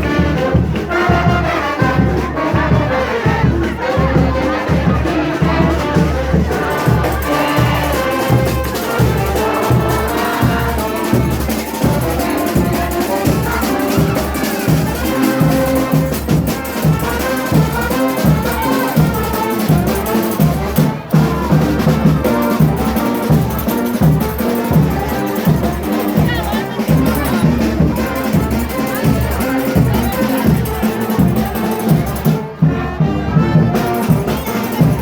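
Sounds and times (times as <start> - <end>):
brass band playing: 0.0 - 35.0
fast drum beat: 4.7 - 32.6, 33.6 - 35.0.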